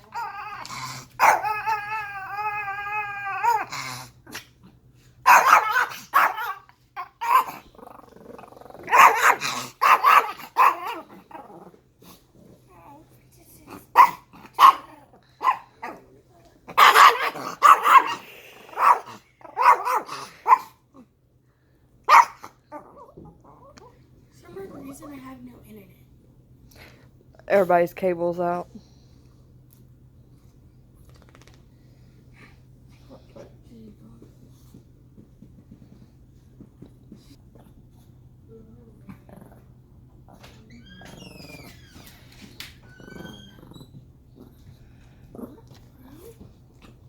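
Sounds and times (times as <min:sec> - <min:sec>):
dog wavering cry: 0:00.0 - 0:03.7
dog barking and growling: 0:00.0 - 0:13.0, 0:13.6 - 0:20.8, 0:22.1 - 0:23.9.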